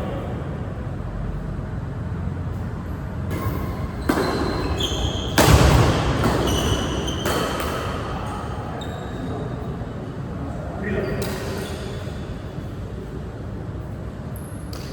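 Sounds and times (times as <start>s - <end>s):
racket hitting shuttlecock: 3.3s - 8.2s
shoes squeaking on court: 3.3s - 9.8s.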